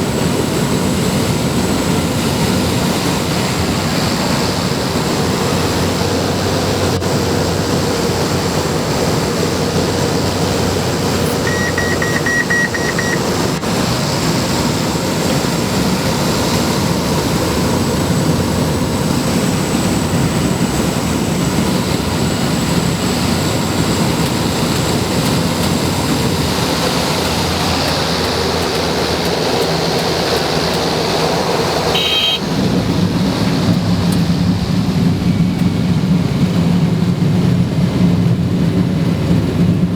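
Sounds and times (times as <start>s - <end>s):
turboprop engine in flight: 0.0s - 39.9s
high beeps: 11.2s - 13.6s, 32.0s - 32.4s.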